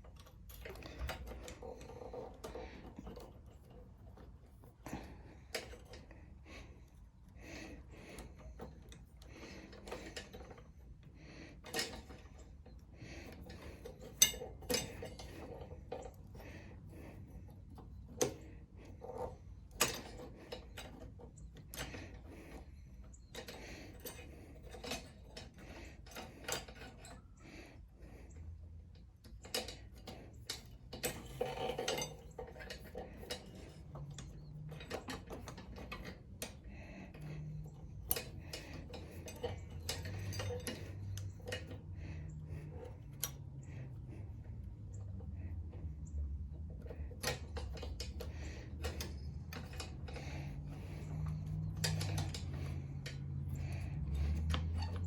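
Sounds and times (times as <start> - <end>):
parts clattering: 0.0 - 27.4, 29.2 - 55.0
small metal parts clinking: 11.6 - 27.4, 29.2 - 55.0.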